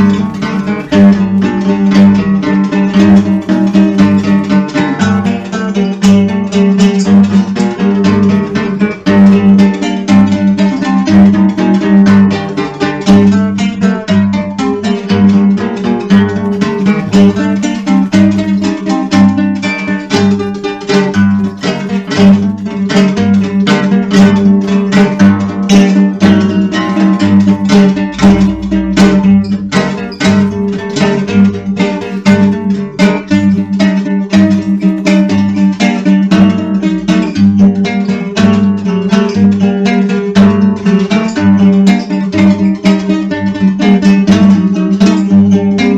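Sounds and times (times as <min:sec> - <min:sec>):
picked acoustic guitar: 0:00.0 - 0:45.9
pulsing low note: 0:27.2 - 0:30.9.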